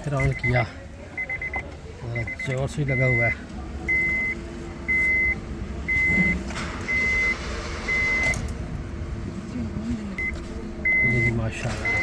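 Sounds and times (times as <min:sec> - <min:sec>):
electronic warning beeps: 0:00.0 - 0:08.4, 0:10.1 - 0:12.0.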